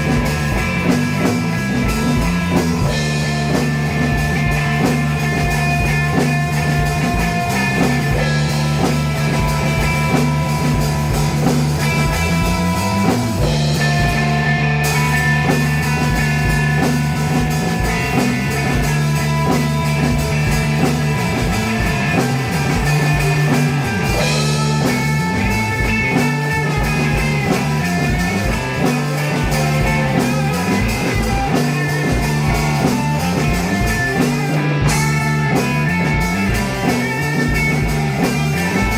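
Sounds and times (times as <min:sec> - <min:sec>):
electric guitar: 0:00.0 - 0:38.9
psychedelic rock jam: 0:00.0 - 0:38.9.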